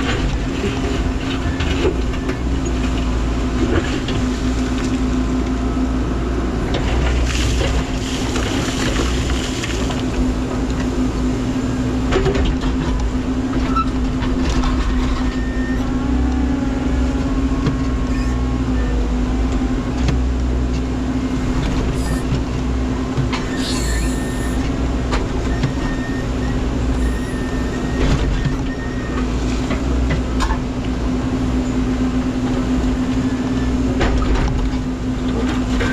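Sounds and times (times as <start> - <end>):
excavator engine humming: 0.0 - 35.9
scraping squeal: 14.9 - 15.9, 18.0 - 19.0, 21.9 - 22.4, 23.4 - 24.7, 25.4 - 29.3.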